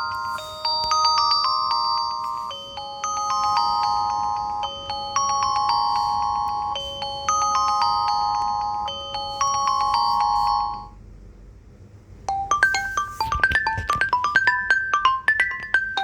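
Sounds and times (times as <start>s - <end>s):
quick ringtone melody: 0.0s - 11.0s, 12.3s - 16.0s
slow ringtone melody: 0.0s - 11.0s, 12.3s - 13.9s.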